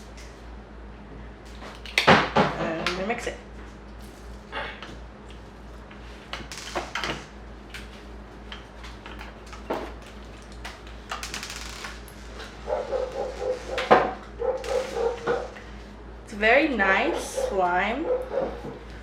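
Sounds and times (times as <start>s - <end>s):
dog whining: 12.6s - 15.6s, 17.1s - 18.7s.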